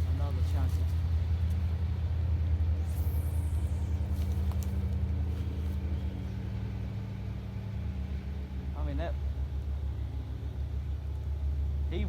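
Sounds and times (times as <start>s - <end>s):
engine idling hum: 0.0s - 12.0s
faint high falling whine: 2.5s - 6.5s.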